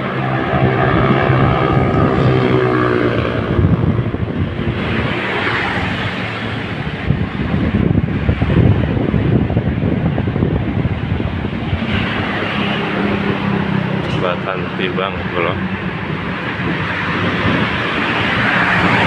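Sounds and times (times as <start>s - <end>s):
vehicle engine easing off: 0.0s - 6.8s
road and wind rush: 0.0s - 19.0s
wind buffeting microphone: 0.0s - 19.0s.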